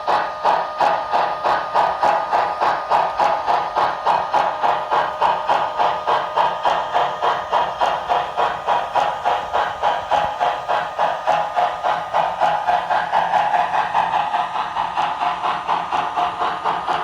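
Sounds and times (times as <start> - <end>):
steam locomotive exhaust chuffs: 0.0 - 17.0.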